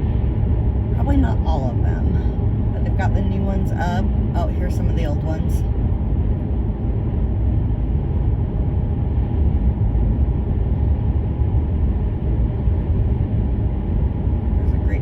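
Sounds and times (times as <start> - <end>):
car road and engine rumble: 0.0 - 15.0.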